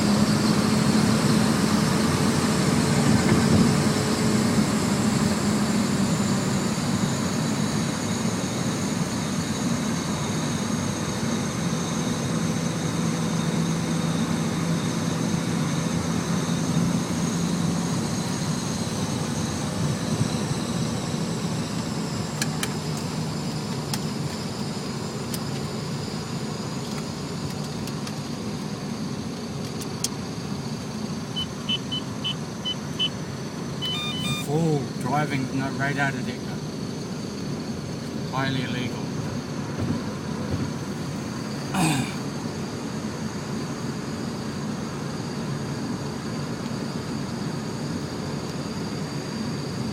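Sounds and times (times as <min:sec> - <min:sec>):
car engine cruising: 0:00.0 - 0:46.8
road noise inside car: 0:00.0 - 0:49.9
short high beeps: 0:31.4 - 0:33.1, 0:33.8 - 0:34.7.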